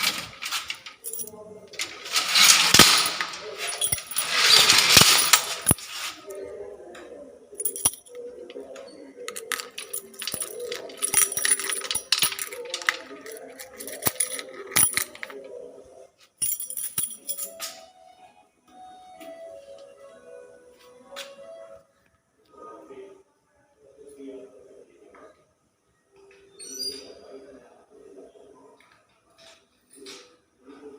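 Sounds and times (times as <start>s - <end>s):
metallic clanks and clinks: 0.0s - 5.9s, 7.6s - 8.6s, 9.3s - 15.4s, 16.4s - 17.8s
metal gate scraping: 0.0s - 6.4s.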